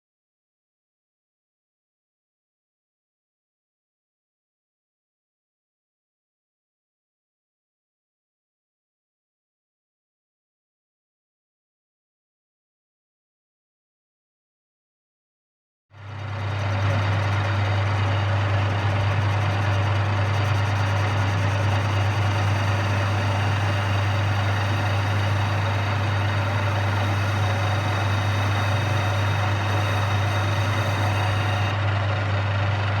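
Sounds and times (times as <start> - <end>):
lathe motor humming: 16.0 - 33.0.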